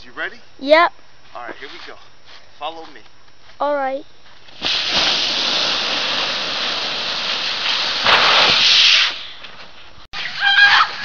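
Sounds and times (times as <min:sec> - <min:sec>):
sled hissing over snow: 0:04.5 - 0:09.4.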